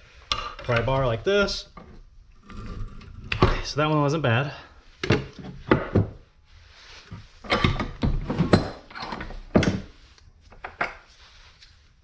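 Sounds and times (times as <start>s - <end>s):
metal parts knocking and clunking: 7.4s - 11.1s.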